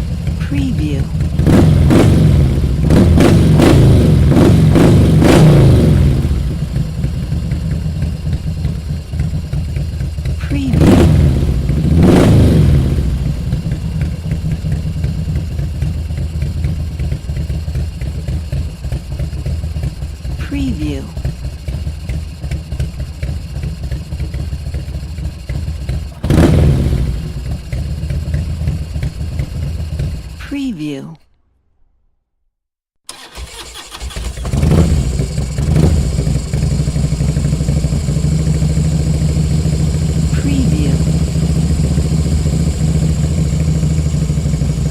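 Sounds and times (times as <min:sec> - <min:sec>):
motorcycle engine idling: 0:00.0 - 0:30.4, 0:33.1 - 0:44.9
motorcycle engine revving: 0:00.0 - 0:30.5, 0:33.1 - 0:44.9
starter cranking: 0:33.1 - 0:36.6.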